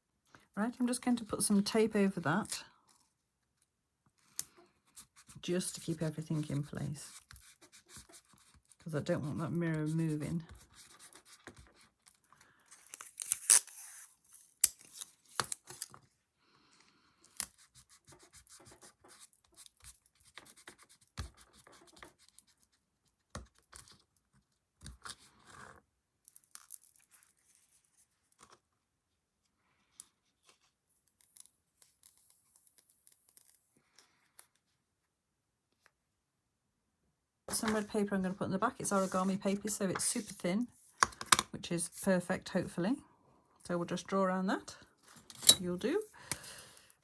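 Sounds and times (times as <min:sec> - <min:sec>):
adhesive tape tearing: 0:12.9 - 0:15.1.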